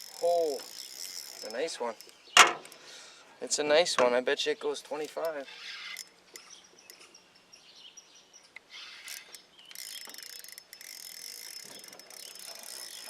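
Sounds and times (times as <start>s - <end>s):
fishing reel clicking and ratcheting: 0.0s - 2.8s, 5.2s - 6.1s, 8.7s - 13.0s
faint bird chirps: 5.4s - 13.0s.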